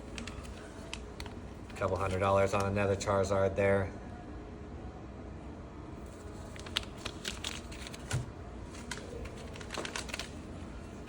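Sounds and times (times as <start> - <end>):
plastic packaging crinkling: 0.0 - 2.7, 6.1 - 11.0
small clicks and rustles: 6.5 - 10.4.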